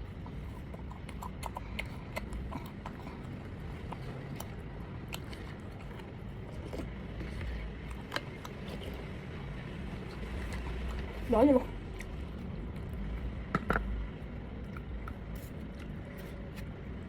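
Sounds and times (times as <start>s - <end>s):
steady low hum: 0.0s - 17.0s.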